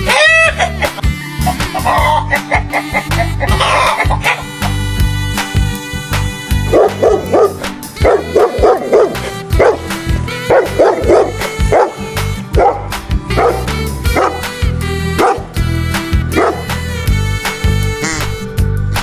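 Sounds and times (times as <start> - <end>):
background music: 0.0 - 19.0
dog barking: 6.7 - 12.0, 12.6 - 12.8, 13.4 - 14.4, 15.2 - 15.4, 16.4 - 16.7.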